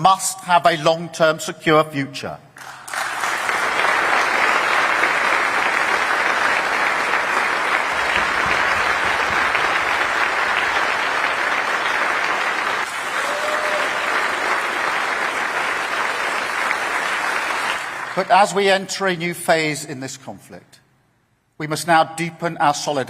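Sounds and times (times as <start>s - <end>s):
audience applauding: 2.6s - 18.4s.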